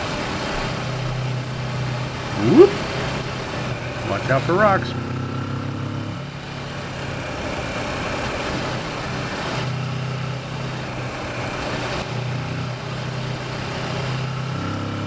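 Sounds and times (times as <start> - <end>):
motorcycle engine running: 0.6 - 15.0.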